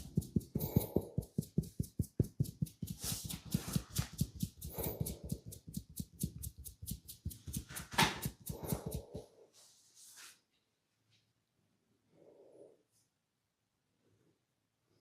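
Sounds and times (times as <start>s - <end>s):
hands tapping rapidly: 0.0s - 9.2s.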